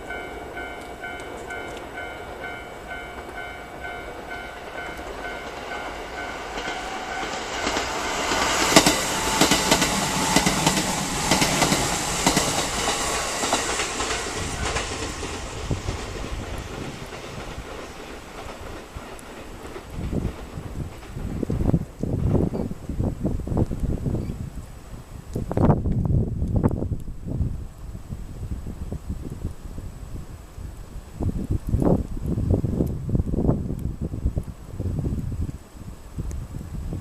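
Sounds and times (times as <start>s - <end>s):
level-crossing warning bell: 0.0s - 10.8s
freight train rumbling past: 0.0s - 23.5s.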